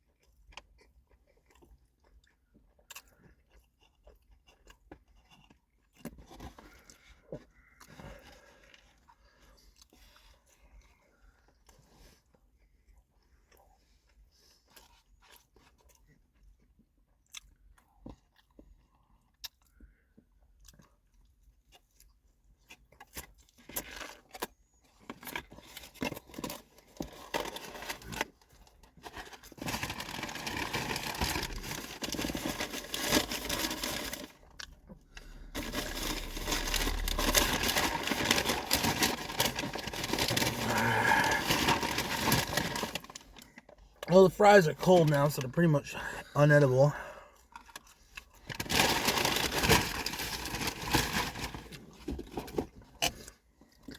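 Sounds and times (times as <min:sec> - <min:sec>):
chewing: 0:00.0 - 0:27.0
food packaging crinkling: 0:23.0 - 0:46.6, 0:47.5 - 0:53.9.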